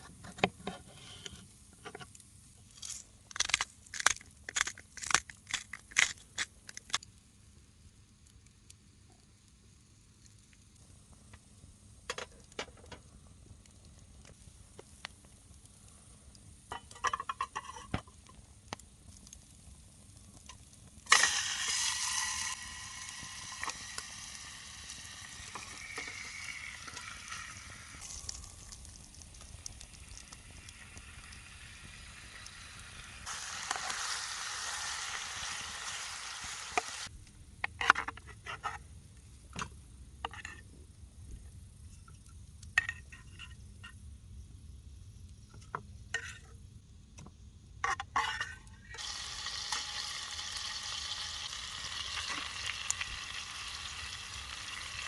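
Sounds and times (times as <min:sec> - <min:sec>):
food sizzling in a pan: 0:21.0 - 0:37.1, 0:48.9 - 0:55.0.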